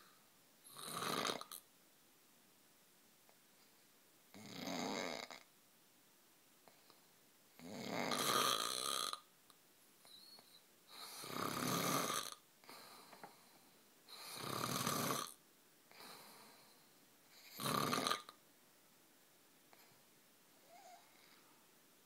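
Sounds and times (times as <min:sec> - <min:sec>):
quiet breaths: 0:00.0 - 0:01.8, 0:03.2 - 0:22.0
man snoring heavily: 0:00.7 - 0:01.6, 0:04.4 - 0:05.4, 0:07.6 - 0:09.2, 0:11.0 - 0:12.4, 0:14.2 - 0:15.4, 0:17.4 - 0:18.3.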